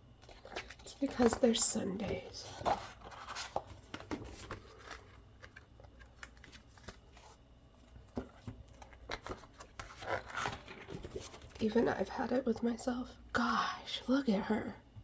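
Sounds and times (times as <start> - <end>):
paper pages rustling: 0.2 - 11.9.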